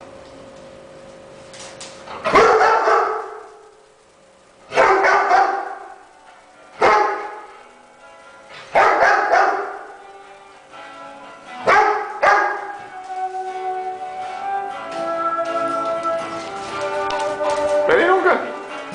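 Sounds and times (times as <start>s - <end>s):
dog barking: 2.2s - 3.6s, 4.7s - 6.0s, 6.8s - 7.5s, 8.7s - 10.0s, 11.6s - 12.8s.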